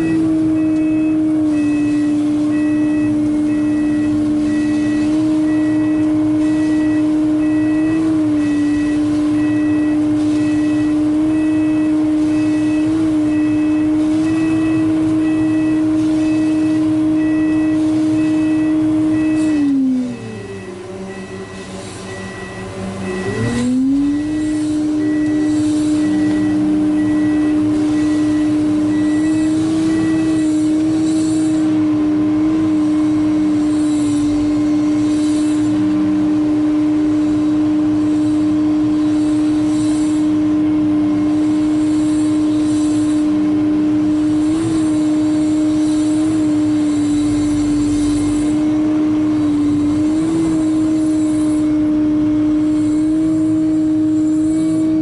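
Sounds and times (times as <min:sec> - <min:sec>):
diesel engine revving: 0:00.0 - 0:55.0
repeating beep: 0:17.2 - 0:30.4.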